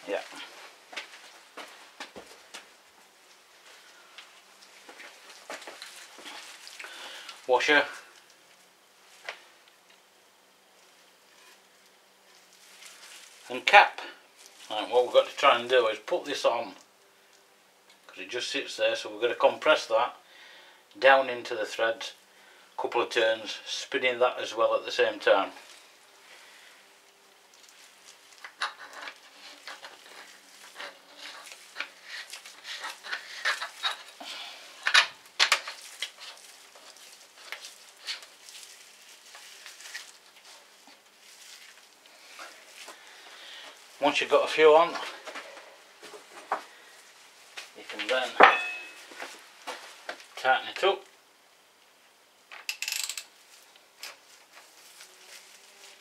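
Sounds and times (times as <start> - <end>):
ratchet wrench clicking: 52.6 - 53.3.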